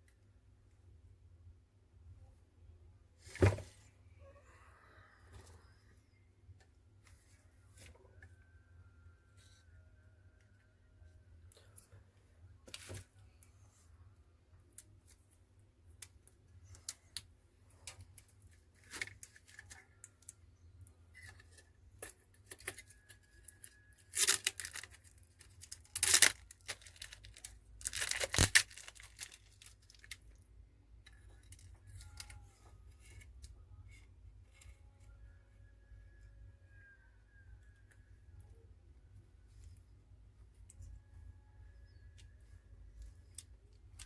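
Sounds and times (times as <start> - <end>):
plastic film tearing: 24.0 - 30.2.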